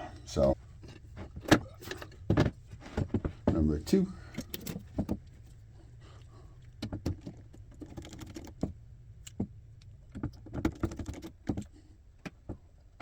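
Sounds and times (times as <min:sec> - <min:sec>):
steady low hum: 0:00.0 - 0:10.6.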